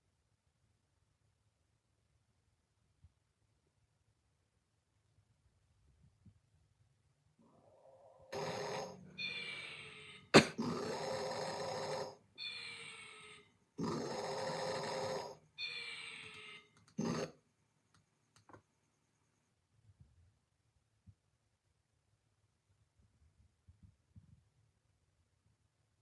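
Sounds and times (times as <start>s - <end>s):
person snoring: 7.6s - 15.4s.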